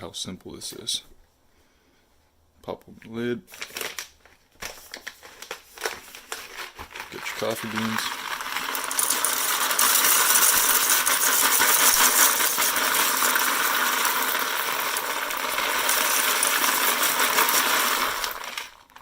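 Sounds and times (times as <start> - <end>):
coffee beans rattling into hopper: 5.8 - 19.0.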